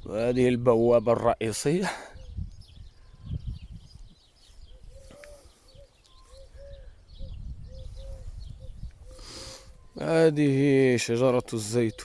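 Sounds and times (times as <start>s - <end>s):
small birds chirping faintly: 0.0s - 12.0s
doves cooing: 4.6s - 10.3s.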